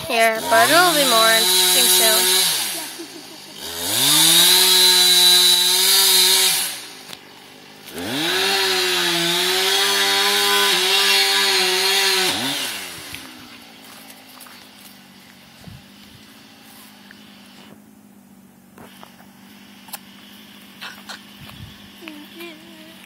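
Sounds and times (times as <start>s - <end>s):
chainsaw revving and idling: 0.0s - 17.8s.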